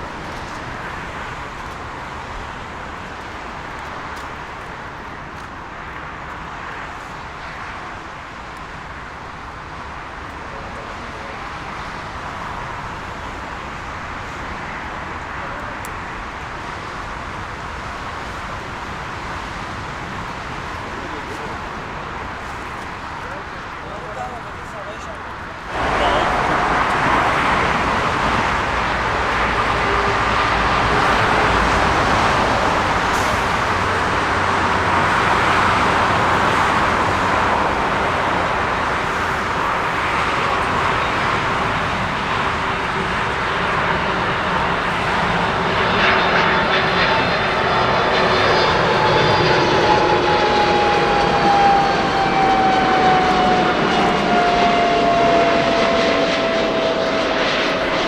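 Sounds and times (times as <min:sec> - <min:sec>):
jet engines running loud: 0:00.0 - 0:58.0
whine falling in pitch: 0:44.1 - 0:58.0.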